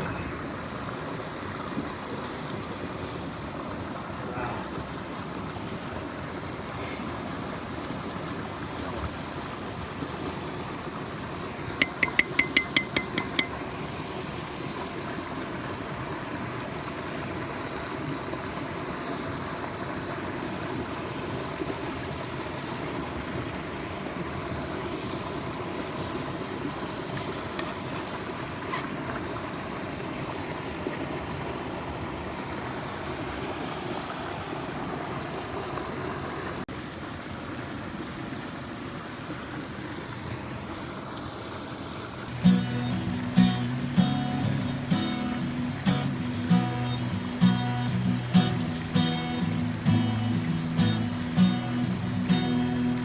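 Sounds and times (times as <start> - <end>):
stream rushing: 0.0 - 53.0
sharp clinks: 11.8 - 13.6.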